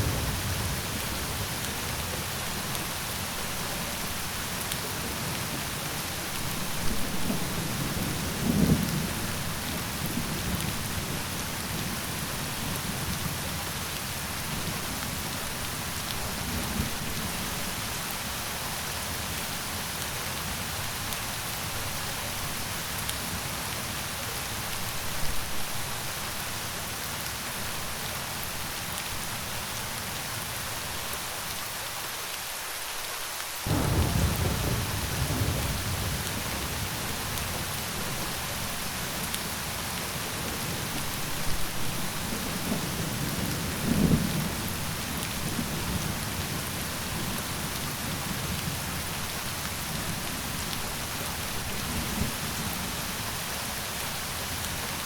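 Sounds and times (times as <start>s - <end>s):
steady rain falling: 0.0s - 55.0s
thunder rumbling: 33.7s - 53.0s.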